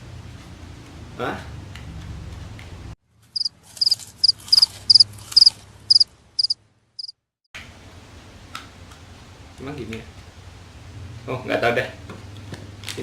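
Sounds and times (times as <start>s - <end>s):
cricket chirping: 3.4s - 7.2s.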